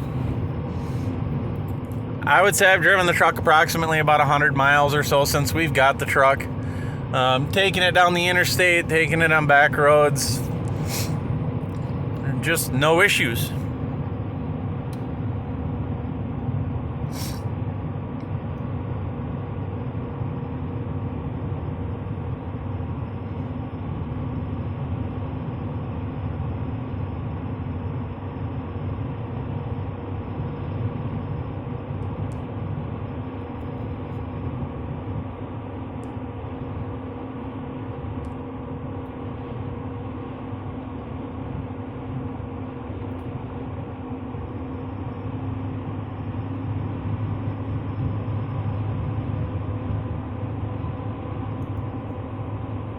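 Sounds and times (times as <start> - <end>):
diesel truck engine drone in cab: 0.0 - 52.9.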